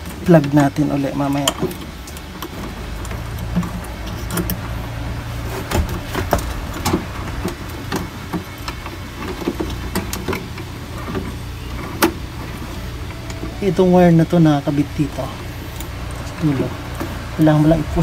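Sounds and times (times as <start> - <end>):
parts clicking and knocking: 0.0 - 13.8
steady low hum: 0.0 - 18.0.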